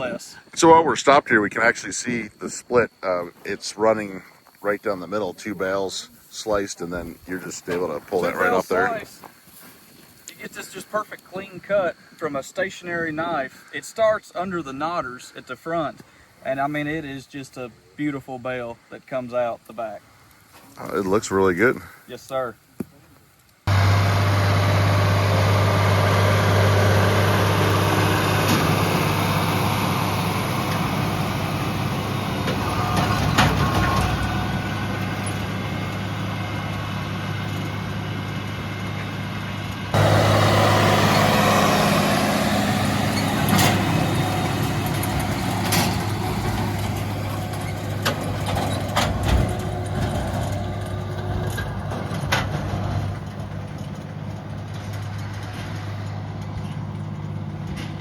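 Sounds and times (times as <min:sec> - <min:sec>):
tractor engine running: 0:23.7 - 0:58.0
baler machinery clicks and knocks: 0:43.2 - 0:58.0.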